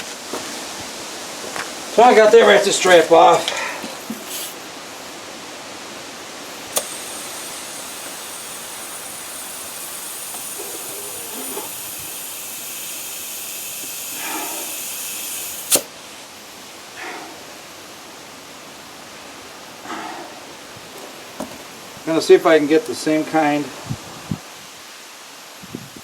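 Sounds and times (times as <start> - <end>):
compressed air hissing into tire: 2.0 - 4.9, 5.8 - 16.2, 17.0 - 17.5, 19.9 - 20.4
sharp click: 15.6 - 15.9.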